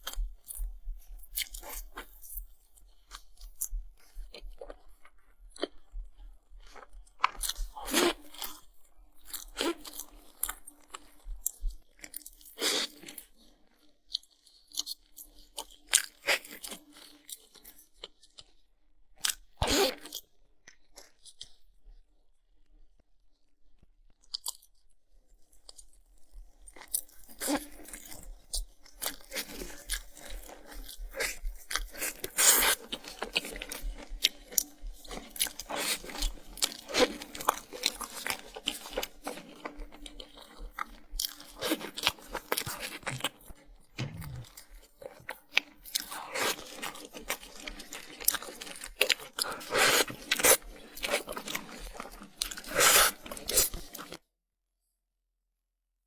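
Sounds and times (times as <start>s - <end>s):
person chewing crisp food: 1.2s - 2.4s, 3.0s - 5.9s, 6.6s - 18.5s, 19.2s - 20.2s, 24.2s - 24.7s, 26.6s - 44.6s, 45.2s - 54.2s.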